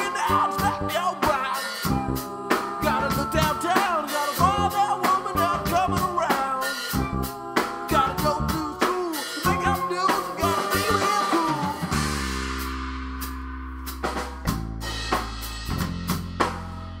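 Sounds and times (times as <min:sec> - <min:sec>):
indie rock band playing: 0:00.0 - 0:17.0
drum hits: 0:07.7 - 0:16.7.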